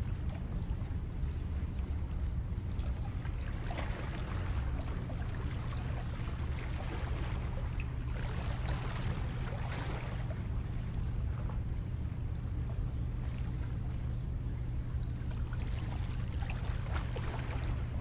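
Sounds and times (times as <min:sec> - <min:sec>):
wind rumble on microphone: 0:00.0 - 0:18.0
sea waves washing: 0:02.7 - 0:11.6.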